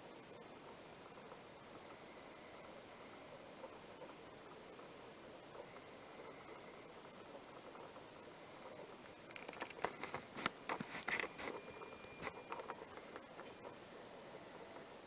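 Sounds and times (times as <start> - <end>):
low steady hiss: 0.0 - 15.0.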